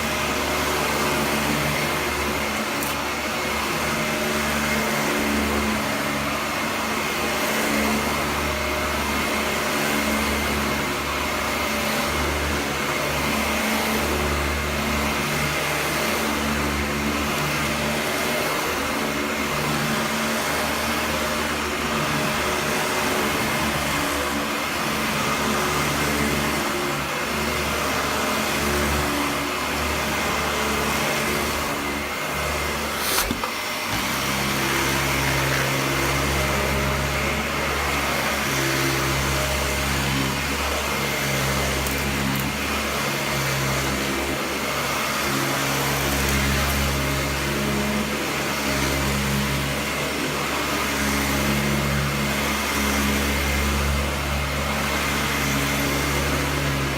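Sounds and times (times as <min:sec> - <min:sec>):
vacuum cleaner running: 0:00.0 - 0:56.9
sharp click: 0:33.0 - 0:34.0.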